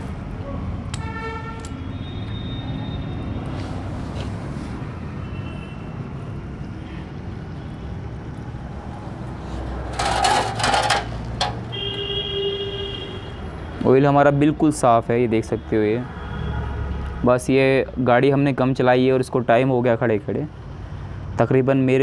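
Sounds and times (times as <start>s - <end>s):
road traffic rumble: 0.0s - 22.0s.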